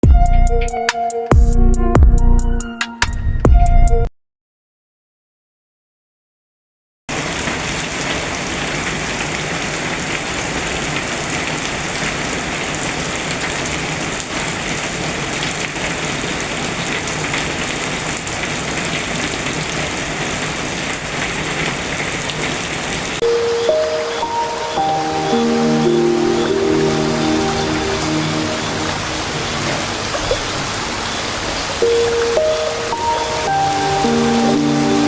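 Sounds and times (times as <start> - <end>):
heavy rain falling: 7.1 - 35.0.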